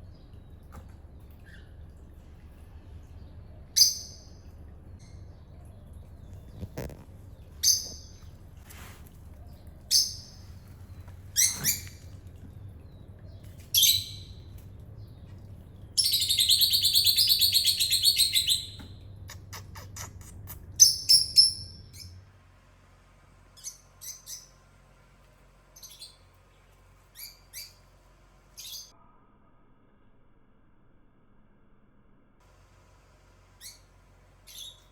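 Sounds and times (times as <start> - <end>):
low steady hum: 0.0 - 34.9
high bird-like chirps: 9.9 - 12.2, 13.7 - 14.5, 16.0 - 22.2.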